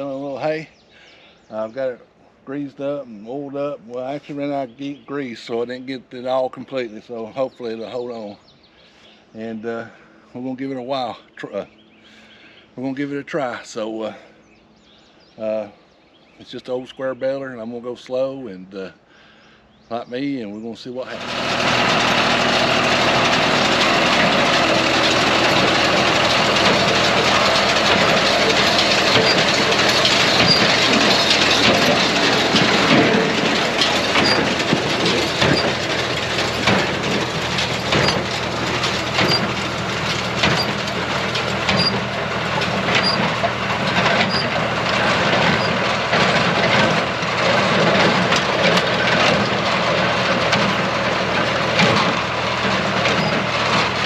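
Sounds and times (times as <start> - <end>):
tractor engine droning: 21.0 - 54.0
baler clacking and knocking: 21.1 - 54.0.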